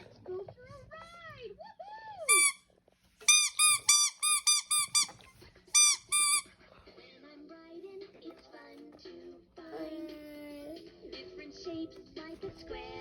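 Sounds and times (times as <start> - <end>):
short high-pitched squeaks: 2.3 - 2.6, 3.2 - 6.4.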